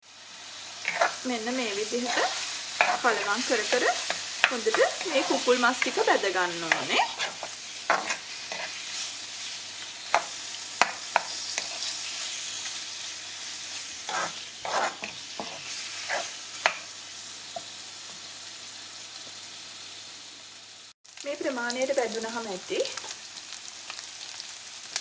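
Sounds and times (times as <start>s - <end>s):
chicken sizzling in oil: 0.0s - 25.0s
utensil scraping a pan: 0.8s - 1.2s, 1.8s - 9.5s, 10.1s - 12.6s, 13.7s - 16.9s.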